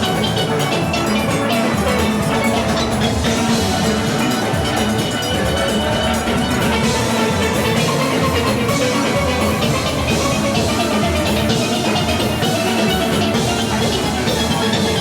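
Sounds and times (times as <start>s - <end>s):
drum kit and percussion: 0.0s - 15.0s
steelpans ringing: 0.0s - 15.0s.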